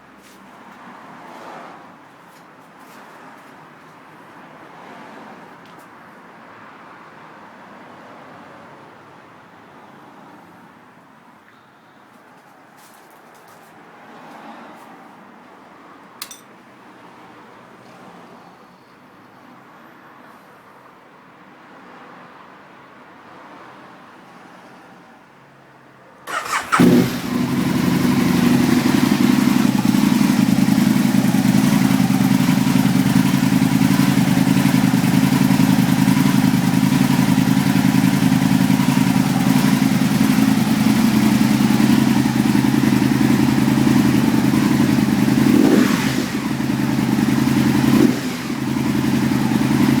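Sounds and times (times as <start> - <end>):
motorcycle starter cranking: 26.3 - 42.5
motorcycle engine idling: 26.3 - 50.0
motorcycle engine revving: 26.3 - 50.0.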